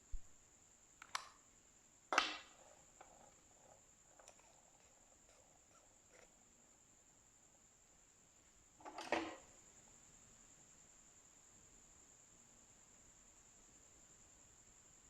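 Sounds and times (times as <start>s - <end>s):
sharp click: 1.0s - 1.4s.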